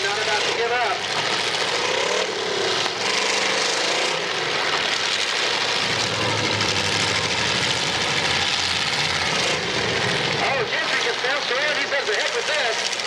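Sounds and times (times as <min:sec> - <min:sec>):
car engines revving: 0:00.0 - 0:13.0.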